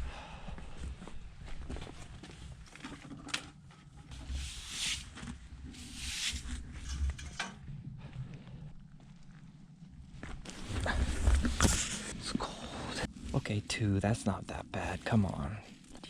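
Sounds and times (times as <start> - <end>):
clothing and gear rustling: 0.8 - 3.2, 8.9 - 12.3.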